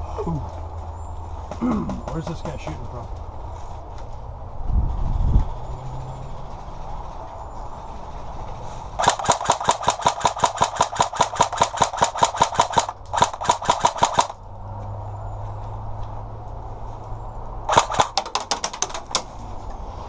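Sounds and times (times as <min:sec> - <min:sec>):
airsoft gun firing rapidly: 0:09.0 - 0:14.4, 0:17.7 - 0:18.7.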